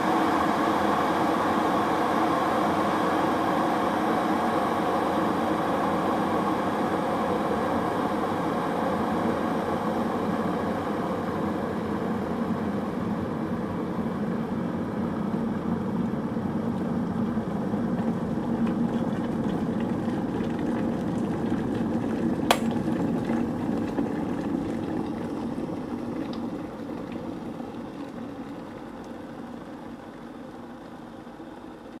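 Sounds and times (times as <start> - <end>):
kettle water boiling: 14.1 - 32.0
kettle switch click: 22.5 - 22.8.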